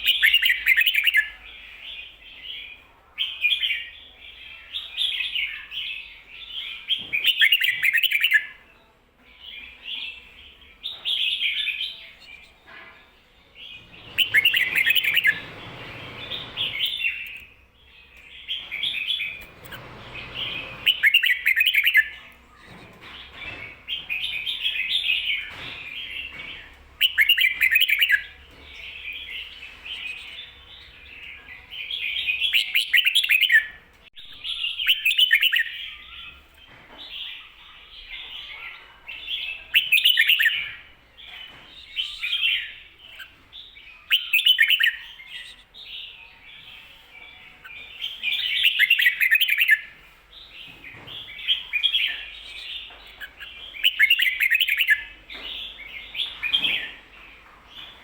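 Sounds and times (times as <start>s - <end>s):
bulbul singing: 0.0s - 8.6s, 9.3s - 58.0s.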